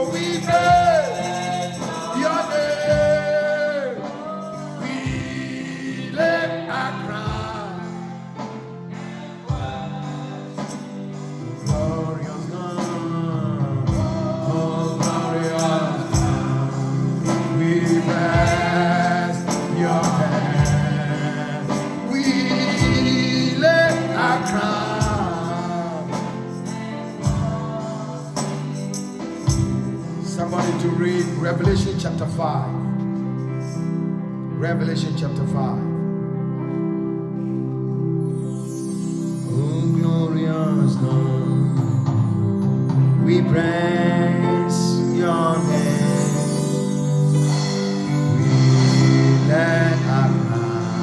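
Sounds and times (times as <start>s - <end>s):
gospel singing with band: 0.0s - 32.5s, 39.4s - 51.0s.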